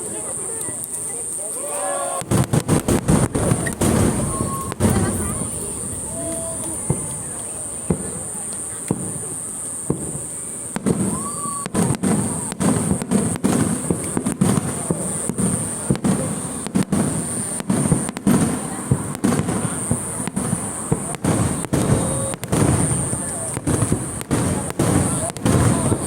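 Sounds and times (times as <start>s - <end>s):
fireworks booming: 0.0s - 26.0s.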